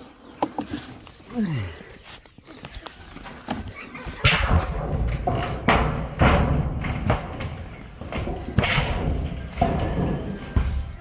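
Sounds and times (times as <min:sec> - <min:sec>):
dull thumps: 0:04.1 - 0:11.0.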